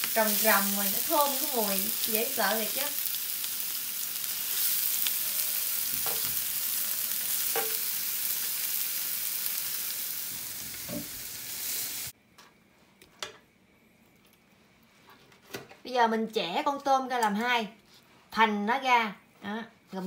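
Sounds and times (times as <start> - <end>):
shrimp sizzling in a pan: 0.0 - 12.1.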